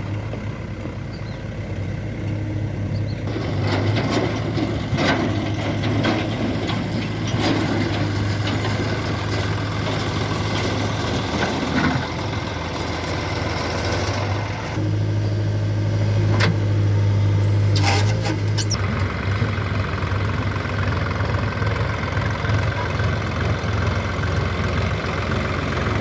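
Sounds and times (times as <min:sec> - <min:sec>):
diesel engine running: 0:00.0 - 0:26.0
clanks and knocks: 0:03.3 - 0:12.2.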